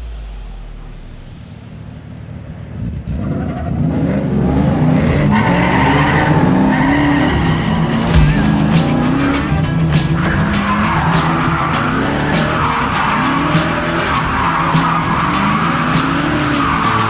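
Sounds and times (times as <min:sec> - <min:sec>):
car engine revving: 0:00.0 - 0:17.0
tyres squealing: 0:05.1 - 0:17.0.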